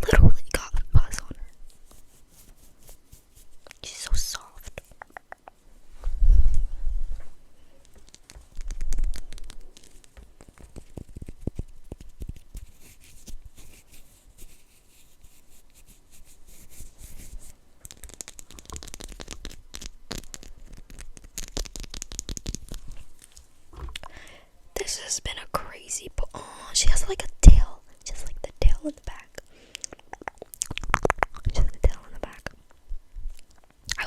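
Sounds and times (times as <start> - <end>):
clicks and taps: 4.8 - 5.6
packaging torn and crinkled: 7.9 - 13.3, 17.8 - 23.4.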